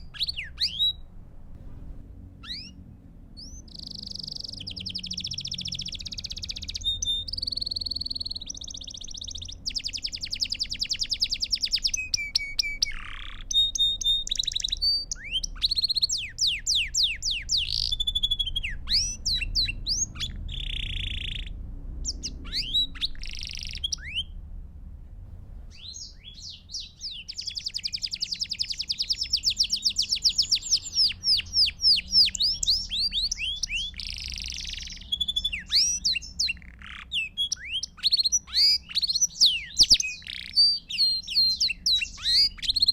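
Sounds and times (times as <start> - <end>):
canary singing trills: 0.0 - 1.2, 2.4 - 24.4, 25.7 - 42.9.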